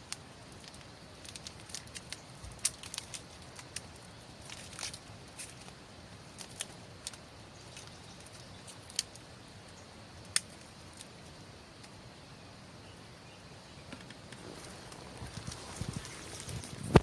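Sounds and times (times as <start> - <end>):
campfire crackling: 0.0 - 12.0, 13.9 - 17.0
fire hiss: 14.2 - 17.0.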